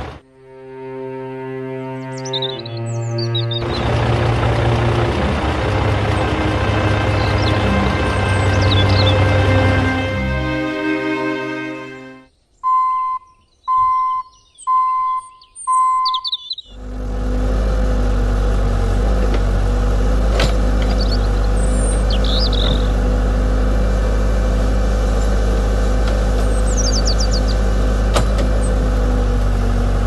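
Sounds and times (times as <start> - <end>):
birds chirping: 1.9 - 16.8, 20.8 - 23.0, 26.4 - 27.7
remote control machine humming: 3.6 - 12.0
short beeps: 12.6 - 16.3.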